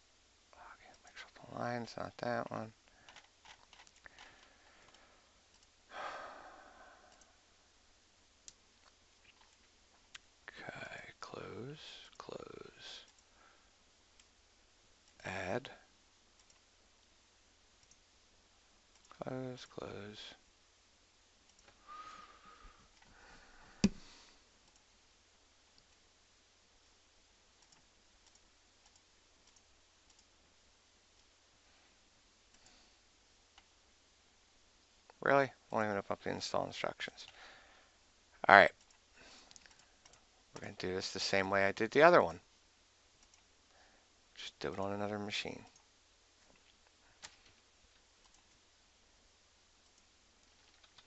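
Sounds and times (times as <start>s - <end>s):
faint mouse clicks: 2.9s - 5.8s, 13.0s - 13.3s, 16.4s - 16.7s, 17.8s - 18.0s, 27.6s - 30.3s, 32.5s - 32.8s, 38.7s - 40.7s, 43.2s - 43.5s, 45.6s - 48.6s, 49.8s - 51.0s
person sighing: 5.9s - 7.4s.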